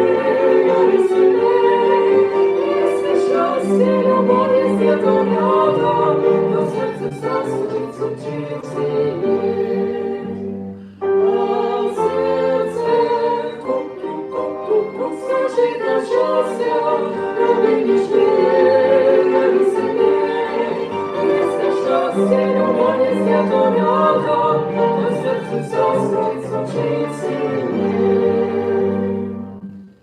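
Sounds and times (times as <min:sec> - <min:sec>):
duet singing with music: 0:00.0 - 0:30.0.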